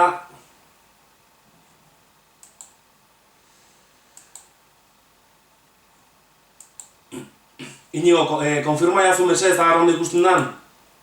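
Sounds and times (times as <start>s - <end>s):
faint room hiss: 0.0s - 11.0s
computer mouse clicking: 2.4s - 2.8s, 4.1s - 4.6s, 6.6s - 7.0s.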